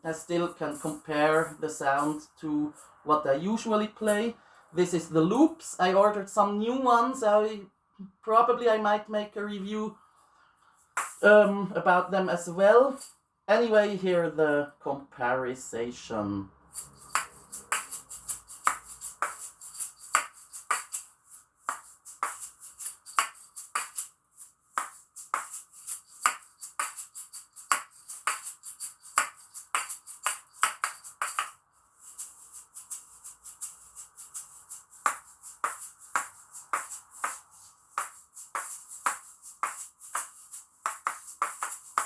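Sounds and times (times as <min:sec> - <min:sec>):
shaker balls clacking and rattling: 0:00.0 - 0:03.1, 0:03.9 - 0:05.0, 0:10.8 - 0:11.6, 0:12.6 - 0:13.2, 0:16.6 - 0:42.0.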